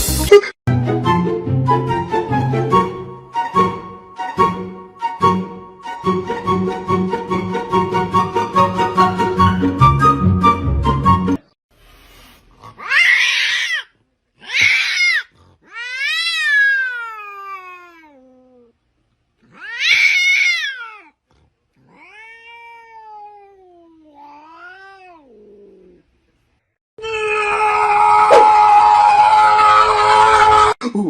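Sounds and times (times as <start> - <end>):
cat meowing and yowling: 12.8 - 18.7, 19.5 - 21.2, 21.9 - 25.4, 27.0 - 29.0.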